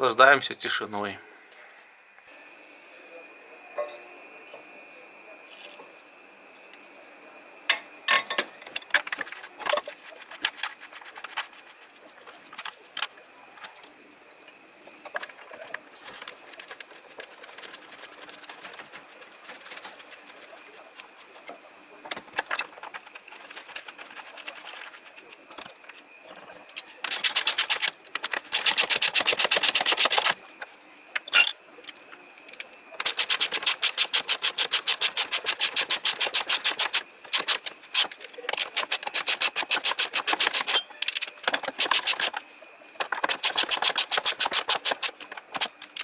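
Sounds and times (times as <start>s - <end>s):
ratchet wrench clicking: 27.1s - 27.9s, 28.6s - 30.4s, 33.1s - 40.8s, 41.8s - 42.3s, 43.3s - 45.1s.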